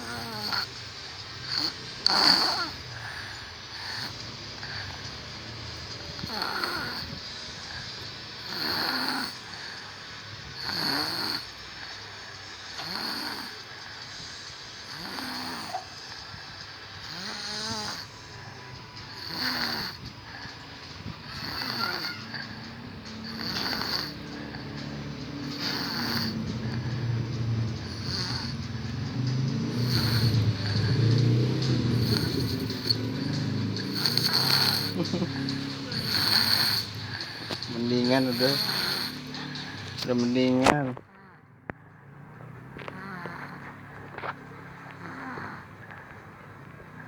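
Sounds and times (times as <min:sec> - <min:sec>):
person snoring: 0:00.0 - 0:00.8, 0:01.4 - 0:09.9, 0:10.5 - 0:11.6, 0:12.7 - 0:13.9, 0:14.8 - 0:16.3, 0:17.0 - 0:41.5, 0:42.7 - 0:46.2.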